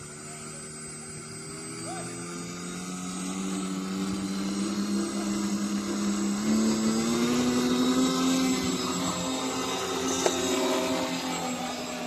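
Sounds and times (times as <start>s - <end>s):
drone propellers humming: 0.0s - 12.0s.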